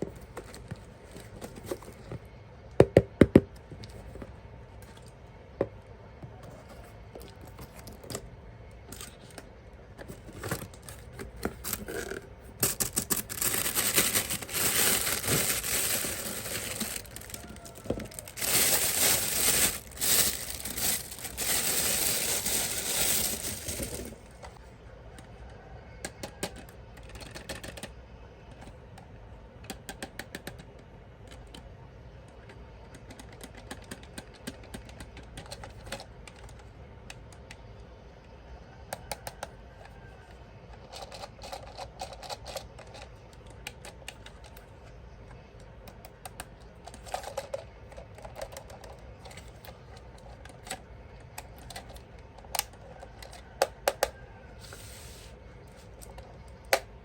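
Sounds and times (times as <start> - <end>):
plastic parts clattering: 10.0 - 24.6, 46.8 - 50.8
plastic toy parts clicking: 10.6 - 24.1.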